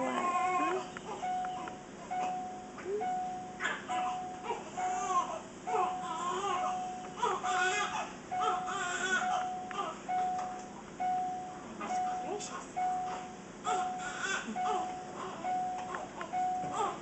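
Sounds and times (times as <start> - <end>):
infant crying: 0.0 - 1.3, 3.6 - 10.0, 13.6 - 15.5, 16.7 - 17.0.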